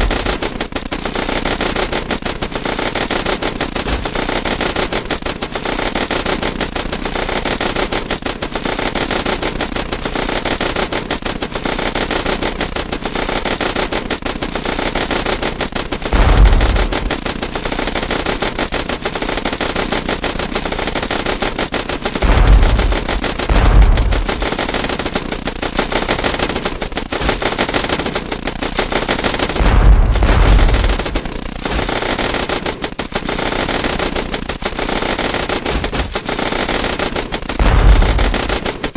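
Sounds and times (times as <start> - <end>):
deep booms: 0.0 - 0.4, 16.2 - 17.4, 22.2 - 24.9, 29.6 - 31.9, 37.6 - 38.7
submachine gun fire: 0.0 - 38.9.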